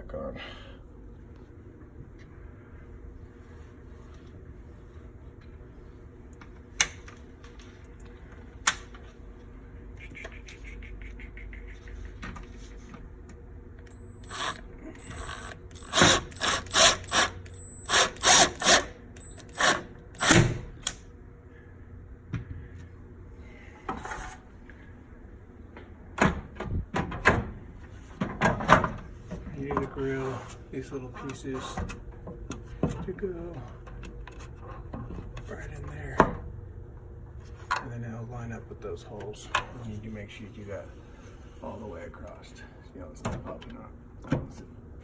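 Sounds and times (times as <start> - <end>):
screw being driven: 13.9 - 20.4.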